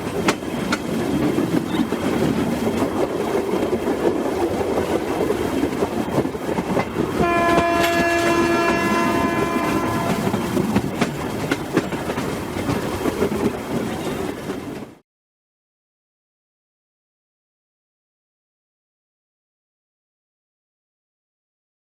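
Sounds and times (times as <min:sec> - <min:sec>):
freight train rumbling: 0:00.0 - 0:15.0
locomotive air horn: 0:07.2 - 0:10.7.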